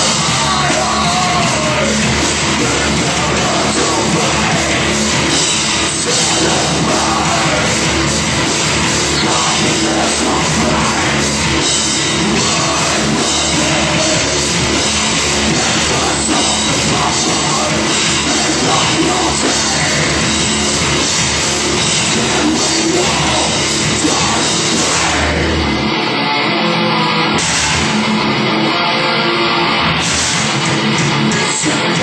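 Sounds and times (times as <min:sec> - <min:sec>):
heavy metal music with drums: 0:00.0 - 0:32.0.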